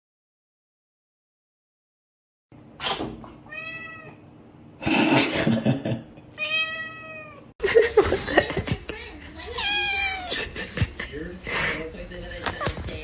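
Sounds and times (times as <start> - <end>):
cat meowing: 3.5 - 4.2, 6.4 - 7.5, 9.5 - 10.3.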